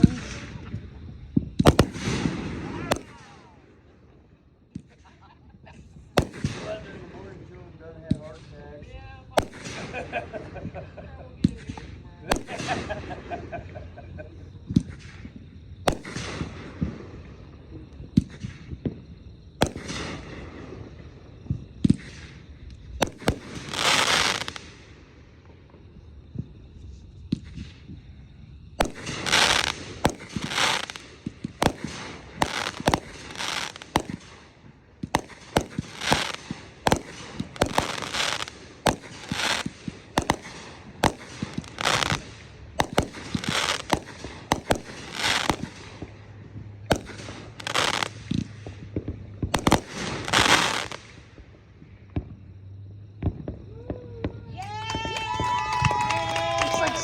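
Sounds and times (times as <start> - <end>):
fireworks hissing bursts: 0.0 - 4.1, 6.0 - 10.8, 11.4 - 14.0, 14.6 - 17.5, 19.5 - 51.4
fireworks banging: 0.0 - 52.4
sharp cracks: 1.6 - 3.4, 6.2 - 6.9, 15.9 - 16.8, 19.6 - 20.4, 21.8 - 25.2, 28.8 - 51.3.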